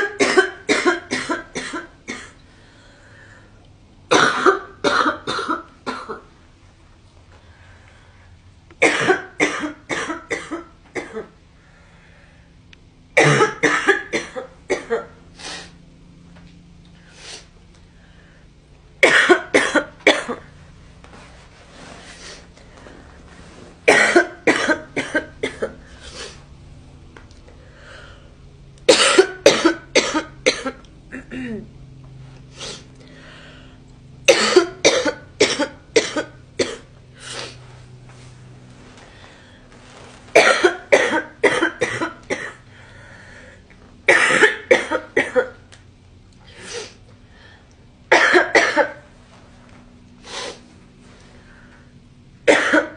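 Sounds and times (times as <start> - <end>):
girl coughing: 0.0 - 2.4, 4.1 - 6.3, 8.8 - 11.4, 13.2 - 15.2, 19.0 - 20.5, 23.9 - 25.8, 28.9 - 31.7, 34.3 - 36.9, 40.4 - 42.6, 44.1 - 45.6, 48.1 - 49.0, 52.5 - 52.9.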